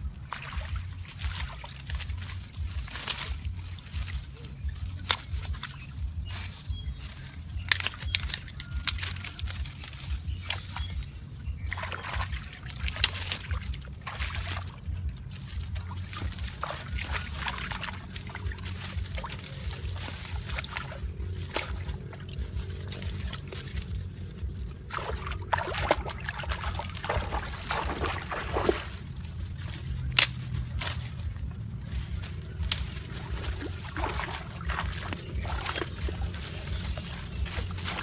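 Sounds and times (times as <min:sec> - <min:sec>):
steady low rumble: 0:00.0 - 0:38.0
water trickling and sloshing: 0:00.0 - 0:38.0
short splashes or knocks: 0:24.9 - 0:29.0, 0:33.3 - 0:36.3.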